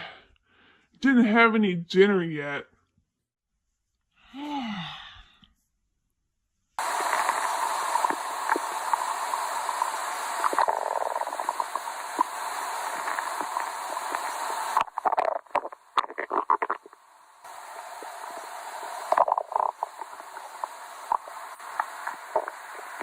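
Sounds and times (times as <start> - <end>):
stomach growling and gurgling: 6.8 - 23.0.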